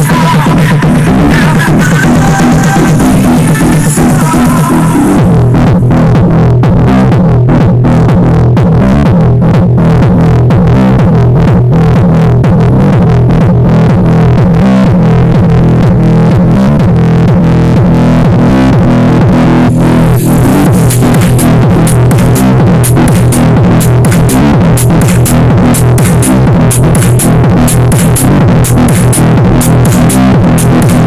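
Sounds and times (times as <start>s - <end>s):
loud electronic dance music: 0.0s - 31.0s.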